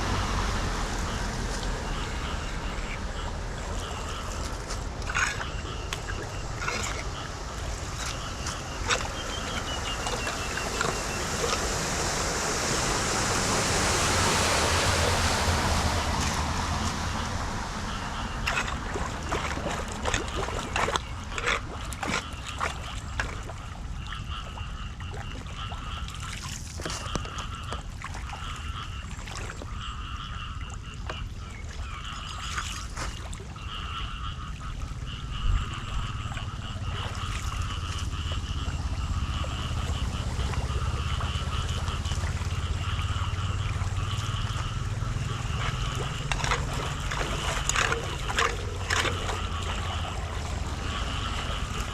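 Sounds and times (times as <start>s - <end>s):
low rumble: 0.0s - 21.4s, 34.5s - 51.9s
water trickling into a drain: 0.0s - 51.9s.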